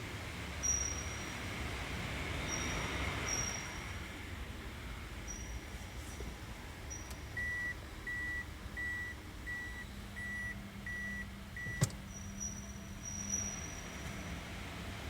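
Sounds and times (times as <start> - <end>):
car warning beeps: 0.6 - 1.4, 6.8 - 14.4
high-pitched squeal: 12.1 - 14.4.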